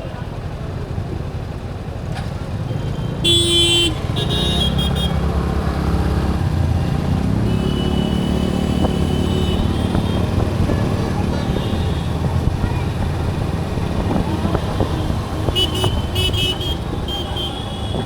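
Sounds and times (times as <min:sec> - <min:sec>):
motorcycle engine rumble: 0:00.0 - 0:18.0
road noise: 0:00.0 - 0:18.0
vehicle horn: 0:02.7 - 0:05.4, 0:07.2 - 0:12.7, 0:13.6 - 0:18.0.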